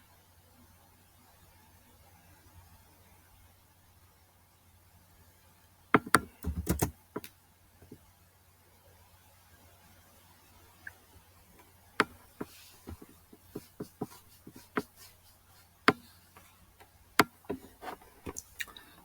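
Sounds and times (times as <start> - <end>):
typing on laptop keyboard: 6.0 - 7.3.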